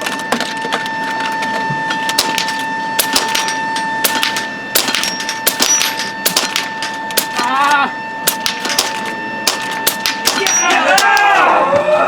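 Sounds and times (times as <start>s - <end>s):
steady high tone: 0.0s - 12.0s
air rifle shots: 2.1s - 11.4s
pellet hits: 8.3s - 11.4s.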